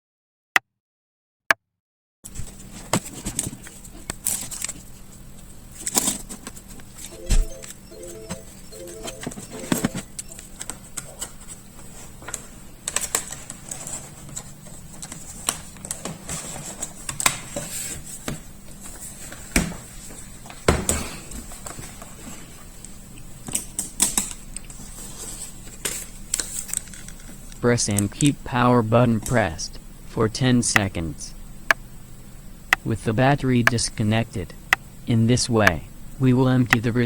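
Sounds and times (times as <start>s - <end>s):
faint steady hum: 16.8s - 37.0s.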